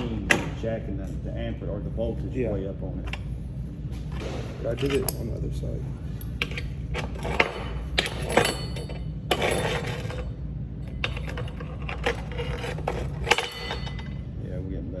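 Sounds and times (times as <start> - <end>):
low hum: 0.0 - 15.0
steel pieces clinking and scraping: 4.7 - 5.3, 6.2 - 14.3.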